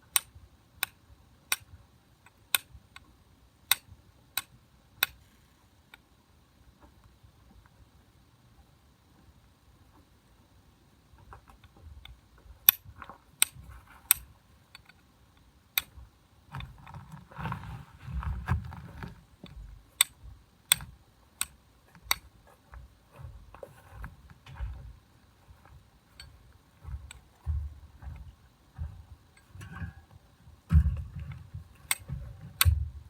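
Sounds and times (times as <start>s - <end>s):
rustling and handling noise: 11.2s - 15.0s, 15.9s - 33.0s.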